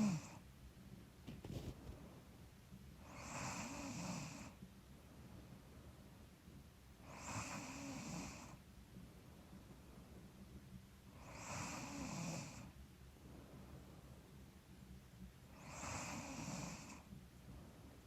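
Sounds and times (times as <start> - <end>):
woman snoring softly: 0.0 - 0.4, 3.0 - 4.6, 7.0 - 8.6, 11.1 - 12.7, 15.5 - 17.1.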